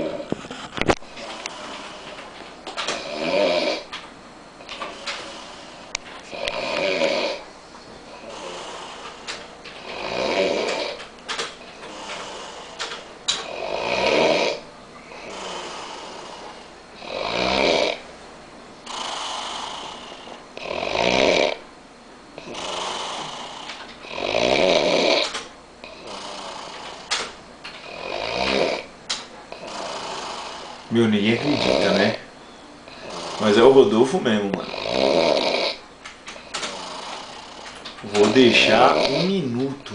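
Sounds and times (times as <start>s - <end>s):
man snoring heavily: 0.0s - 0.3s, 2.8s - 3.9s, 4.7s - 7.5s, 8.1s - 11.0s, 11.8s - 18.1s, 18.8s - 21.7s, 22.4s - 28.9s, 29.5s - 32.3s, 32.9s - 35.8s, 36.4s - 39.5s
quiet breathing: 0.0s - 4.0s, 4.6s - 18.1s, 18.8s - 21.7s, 22.3s - 28.9s, 29.5s - 39.9s.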